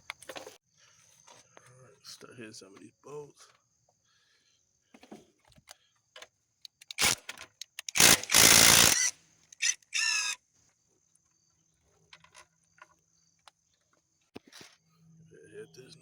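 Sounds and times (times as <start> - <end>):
power tool bursts: 6.9 - 10.4.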